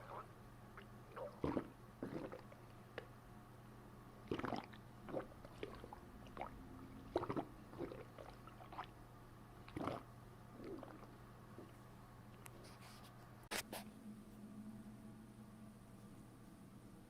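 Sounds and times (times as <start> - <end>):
stomach gurgling: 0.0 - 3.1, 4.2 - 9.0, 9.6 - 11.8.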